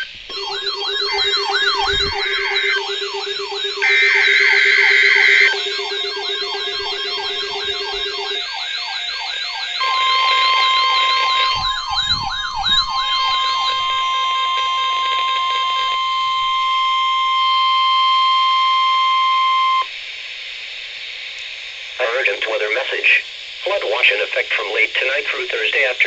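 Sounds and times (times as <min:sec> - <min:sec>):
steady alert tone: 0:00.0 - 0:16.5
electronic sirens yelping: 0:00.0 - 0:19.9.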